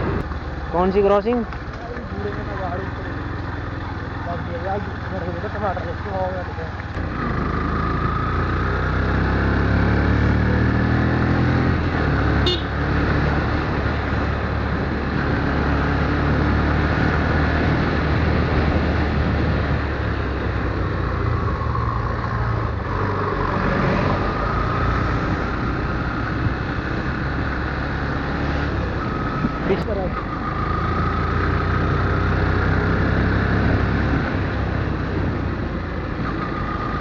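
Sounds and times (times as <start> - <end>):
motorcycle engine running: 0.0 - 23.5.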